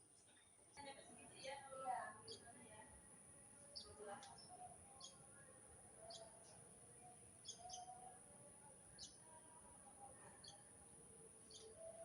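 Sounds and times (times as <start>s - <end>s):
faint bird chirps: 2.2s - 2.6s, 3.7s - 5.4s, 6.0s - 8.2s, 8.9s - 9.4s, 10.3s - 12.0s.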